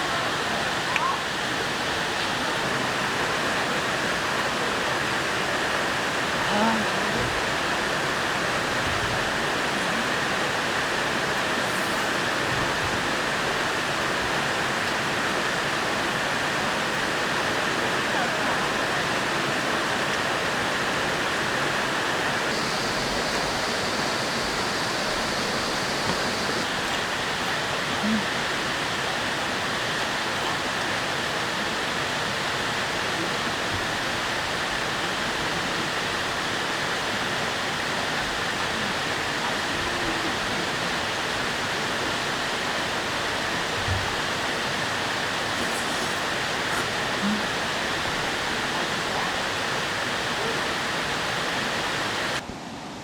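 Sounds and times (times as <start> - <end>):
stream water flowing: 0.0 - 53.0.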